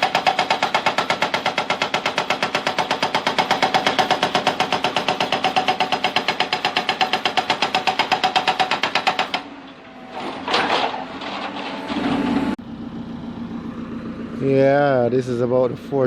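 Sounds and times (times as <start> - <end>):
hydraulic breaker pounding stone: 0.0 - 12.6
machine engine running: 10.2 - 16.0.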